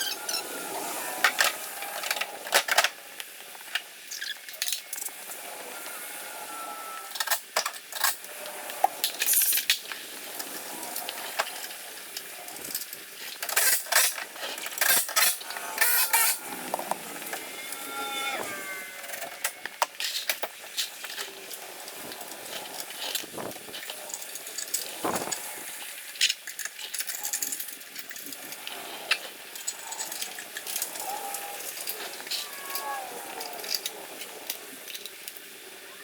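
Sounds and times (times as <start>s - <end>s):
hand tools clicking and clanking: 11.4s - 21.2s, 26.2s - 32.8s.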